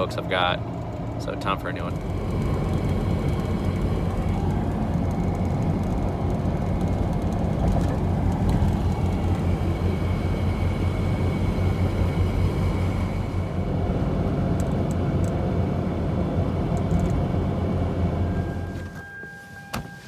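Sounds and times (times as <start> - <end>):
car road and engine rumble: 0.0 - 20.0.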